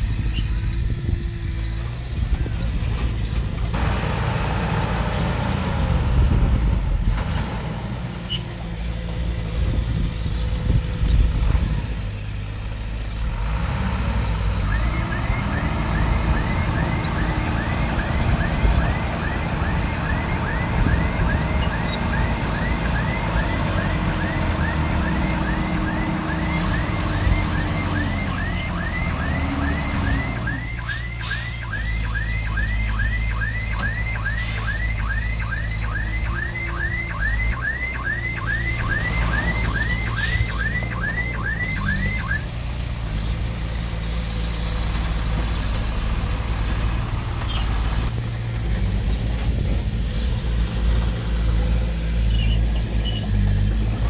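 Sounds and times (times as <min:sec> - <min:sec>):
diesel engine running under load: 0:00.0 - 0:54.0.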